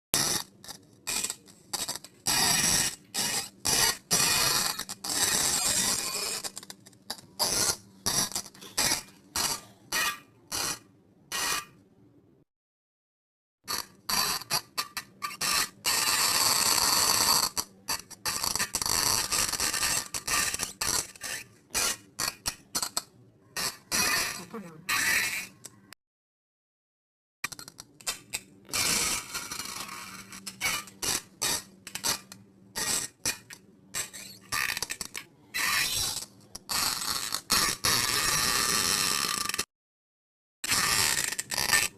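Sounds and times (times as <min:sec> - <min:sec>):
fart sound effects: 0:28.7 - 0:32.2, 0:34.0 - 0:39.7, 0:40.6 - 0:41.9.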